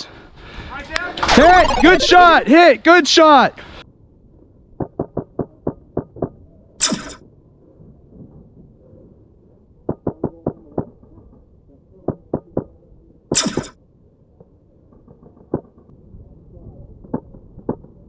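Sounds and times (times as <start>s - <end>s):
airsoft rifle shots: 6.8s - 7.2s, 13.4s - 13.7s.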